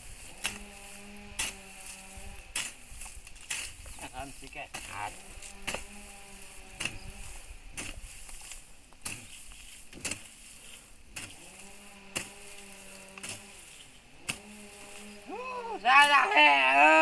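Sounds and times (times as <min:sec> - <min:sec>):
hoe chopping into soil: 0:00.0 - 0:17.0
buzzing hum: 0:05.1 - 0:07.7, 0:11.3 - 0:17.0.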